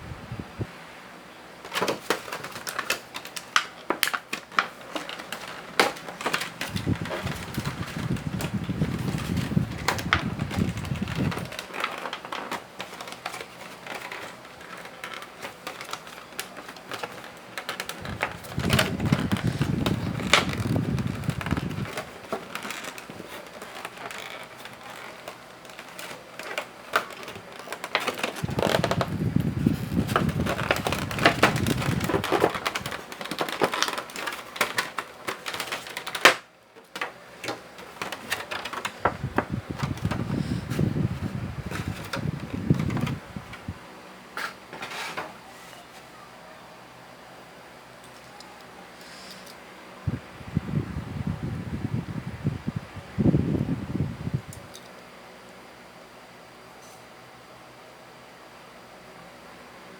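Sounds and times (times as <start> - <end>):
packaging crinkling: 1.6 - 43.8.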